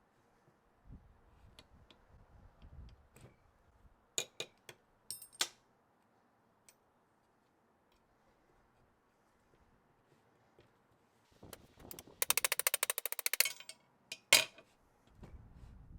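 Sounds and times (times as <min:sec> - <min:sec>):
hard parts clicking and clinking: 0:11.9 - 0:14.6.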